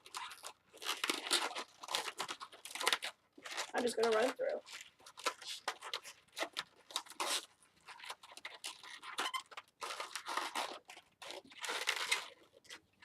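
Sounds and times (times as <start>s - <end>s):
balloons rubbing and squeaking: 0.0s - 13.0s.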